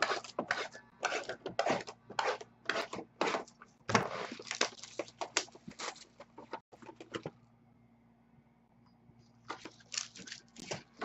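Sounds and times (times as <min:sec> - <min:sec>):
packaging rasp: 0:00.0 - 0:06.1
card packaging rustling and crinkling: 0:03.9 - 0:06.6, 0:09.2 - 0:11.0.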